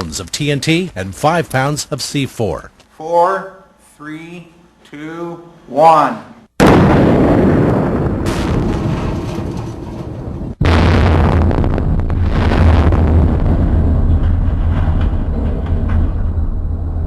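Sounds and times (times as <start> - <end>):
explosion: 6.6 - 17.0.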